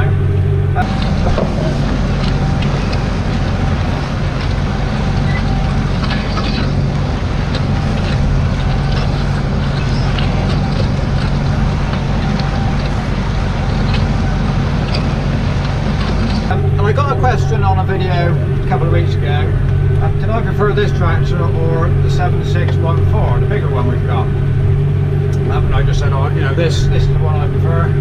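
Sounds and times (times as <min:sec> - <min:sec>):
tractor diesel engine chugging: 0:00.0 - 0:28.0.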